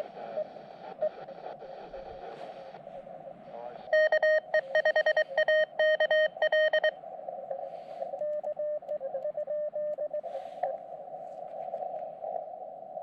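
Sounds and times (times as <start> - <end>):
radio receiver hiss: 0.0 - 8.6, 10.0 - 13.0
faint morse code keying: 3.9 - 7.0
morse code sidetone: 3.9 - 7.0.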